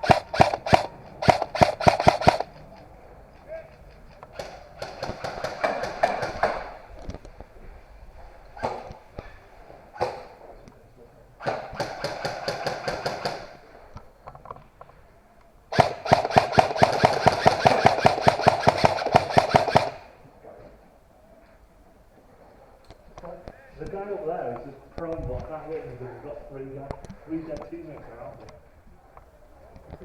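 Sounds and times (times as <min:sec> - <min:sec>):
airsoft guns firing: 0:00.0 - 0:06.9, 0:11.4 - 0:13.6, 0:15.7 - 0:20.2.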